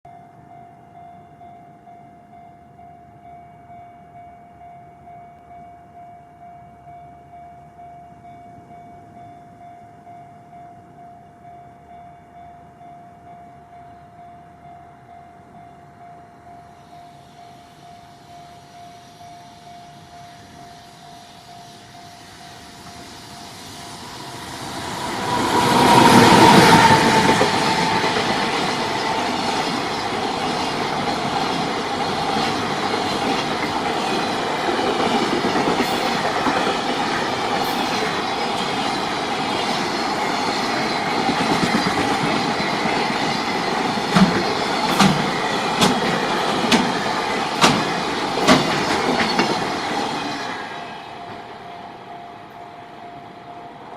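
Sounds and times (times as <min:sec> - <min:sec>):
electric locomotive passing: 0:00.1 - 0:53.9
freight wagons rumbling on rails: 0:22.4 - 0:51.8
sharp rail clacks: 0:44.1 - 0:49.8.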